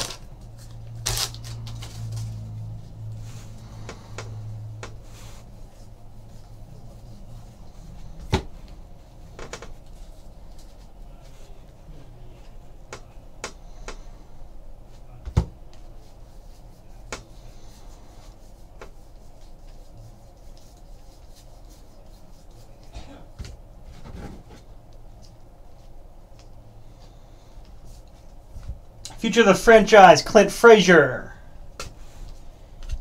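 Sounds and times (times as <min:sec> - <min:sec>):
cards clicking and rustling: 0:00.0 - 0:02.4.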